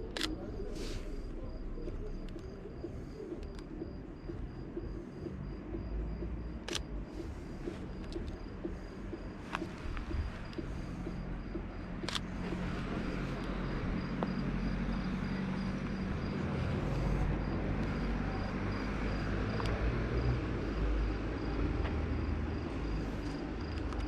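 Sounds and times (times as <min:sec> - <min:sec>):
car traffic rumble: 0:00.0 - 0:24.0.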